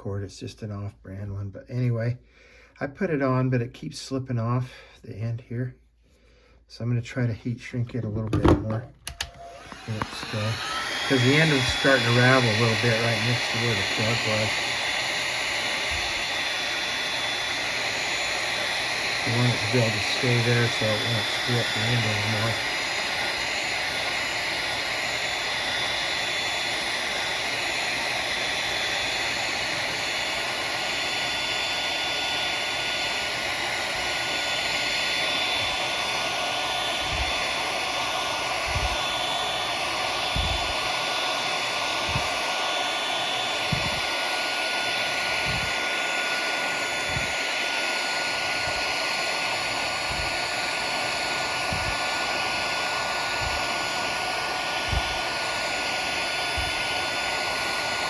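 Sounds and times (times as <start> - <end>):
heat gun blowing: 6.6 - 58.0
soft low thumps: 40.3 - 40.8.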